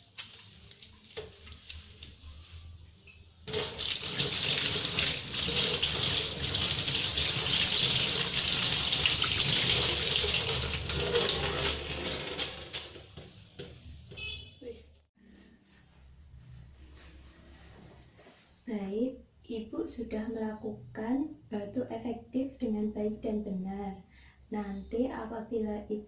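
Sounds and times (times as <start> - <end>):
tap water running into sink: 3.5 - 12.6.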